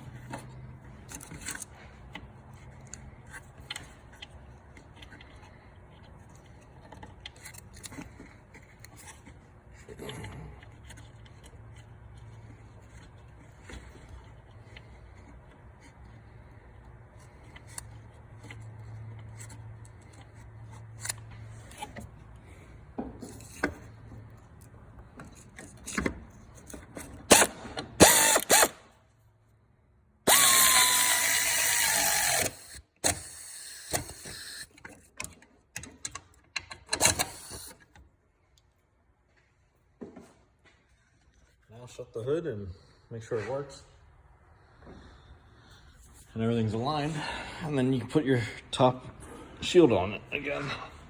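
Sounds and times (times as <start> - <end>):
ratcheting mechanical run: 27.3 - 28.8, 30.3 - 34.7, 36.9 - 37.8
tool clicks: 27.3 - 28.8, 30.3 - 38.0.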